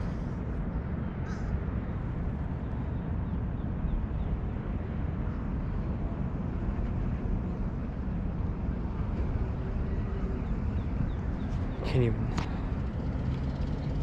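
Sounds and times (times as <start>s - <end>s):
road traffic rumble: 0.0s - 14.0s
passing vehicle humming: 6.0s - 14.0s.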